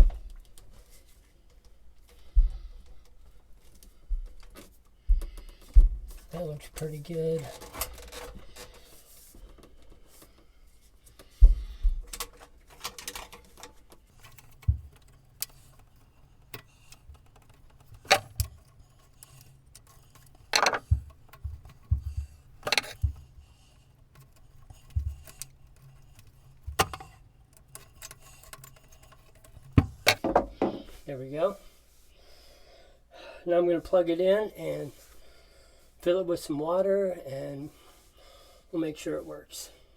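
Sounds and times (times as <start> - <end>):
sump pump being handled: 5.4 - 10.4, 11.2 - 31.0.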